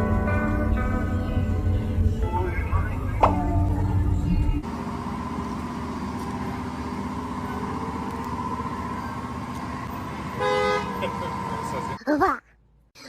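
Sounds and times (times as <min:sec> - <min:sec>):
music: 0:00.0 - 0:04.7
short pitched sound: 0:00.0 - 0:05.4
steady engine hum: 0:00.0 - 0:12.0.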